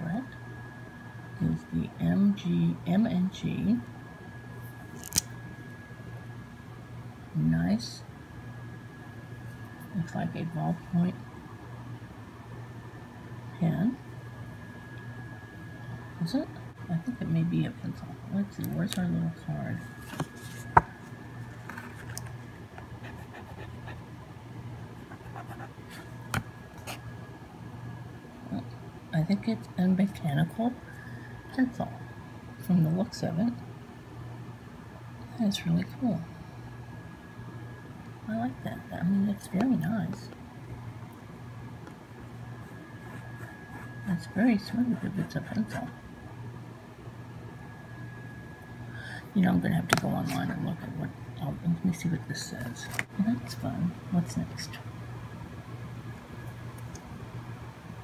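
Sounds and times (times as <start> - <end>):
faint high whine: 0.0 - 58.0
low steady hum: 0.0 - 58.0
pens and packaging handled: 4.9 - 5.3, 21.4 - 22.6.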